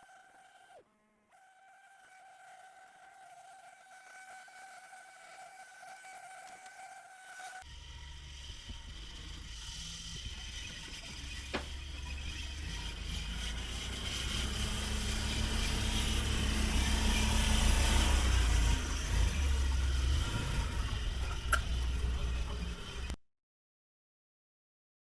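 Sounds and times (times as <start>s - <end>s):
vehicle engine running: 7.7s - 23.2s
road noise: 8.0s - 23.2s.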